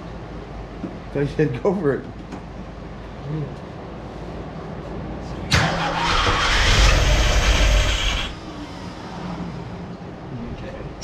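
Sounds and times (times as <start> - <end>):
car engine starting and running: 5.5 - 8.8.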